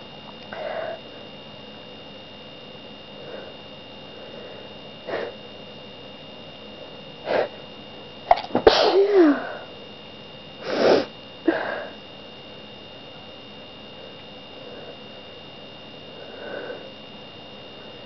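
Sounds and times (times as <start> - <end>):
person sneezing loudly: 8.3 - 9.5.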